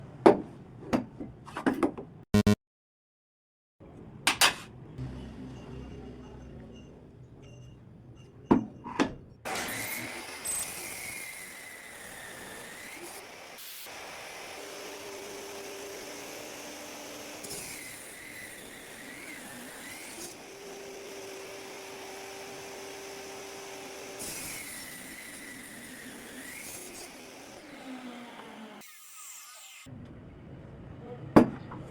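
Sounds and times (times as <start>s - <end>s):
table saw cutting: 9.5s - 29.9s.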